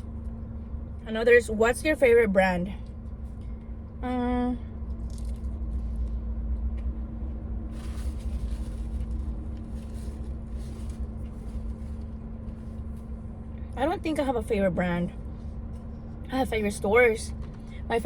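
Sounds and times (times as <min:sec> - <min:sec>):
vehicle engine rumble: 0:00.0 - 0:18.0
faint rustle: 0:07.7 - 0:13.2.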